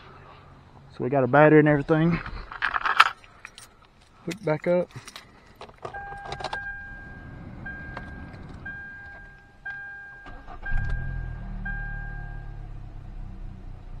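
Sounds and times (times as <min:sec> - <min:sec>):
car engine starting and idling: 0:05.6 - 0:14.0
dashboard warning chime beeping: 0:05.9 - 0:12.6.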